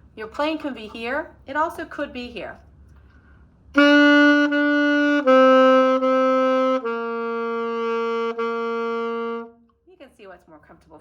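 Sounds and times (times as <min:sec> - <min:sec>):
saxophone playing long notes: 0:03.8 - 0:09.6.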